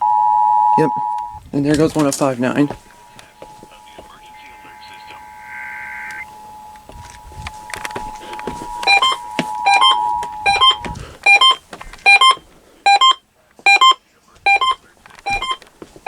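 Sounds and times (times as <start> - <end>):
electronic two-note alarm beeps: 0.0 - 1.4, 2.7 - 15.6
two-tone alert signal from radio: 2.5 - 13.1.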